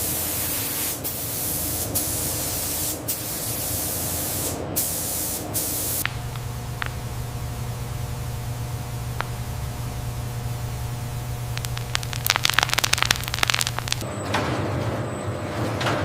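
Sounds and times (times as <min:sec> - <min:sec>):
sawmill machinery humming: 0:06.0 - 0:11.6.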